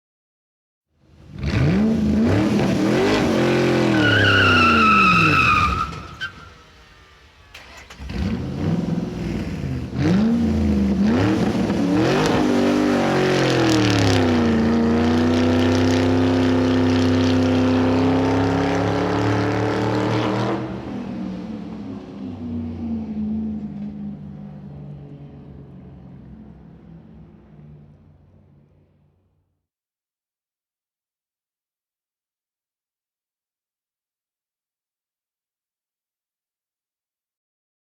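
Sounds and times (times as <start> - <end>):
racing car engine revving: 1.2 - 24.6
tyre squeal: 3.7 - 6.7.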